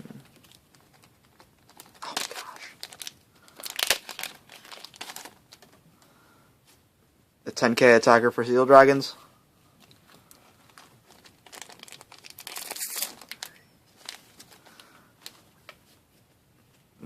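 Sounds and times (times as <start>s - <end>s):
foil wrapper crinkling: 0.2s - 5.8s, 10.1s - 15.5s.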